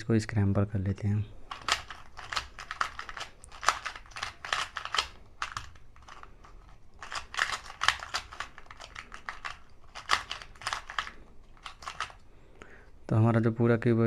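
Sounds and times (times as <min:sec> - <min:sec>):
puzzle cube clicking: 0:01.5 - 0:12.3.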